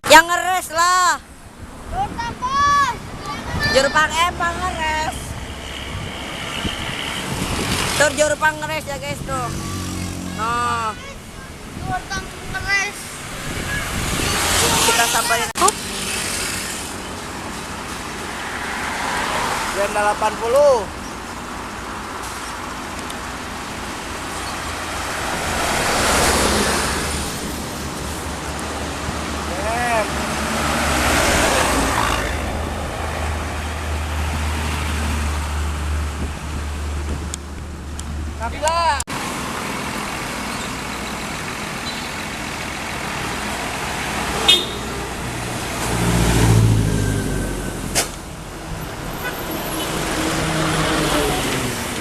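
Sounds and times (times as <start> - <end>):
road traffic: 0.0 - 52.0
vehicle passing by: 2.6 - 20.9, 24.3 - 52.0.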